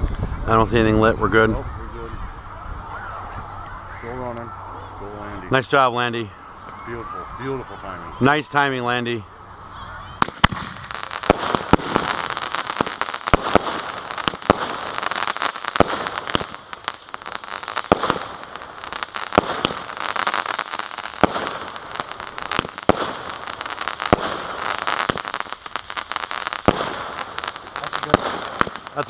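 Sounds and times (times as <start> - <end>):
fireworks crackling: 3.6 - 29.0
fireworks bangs: 10.0 - 29.0.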